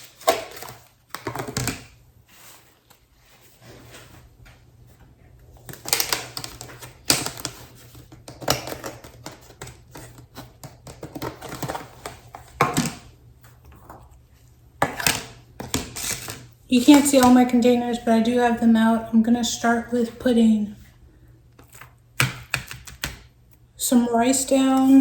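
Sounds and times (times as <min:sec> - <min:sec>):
plastic containers being handled: 0:00.0 - 0:04.3, 0:04.9 - 0:14.2, 0:14.8 - 0:17.6.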